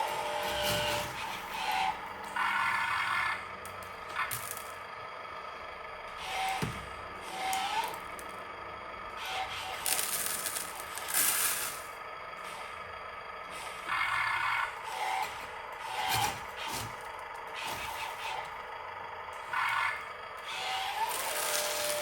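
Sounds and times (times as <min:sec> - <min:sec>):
small electric motors whining: 0:00.0 - 0:22.0
gravel scraping and rattling: 0:09.2 - 0:12.6.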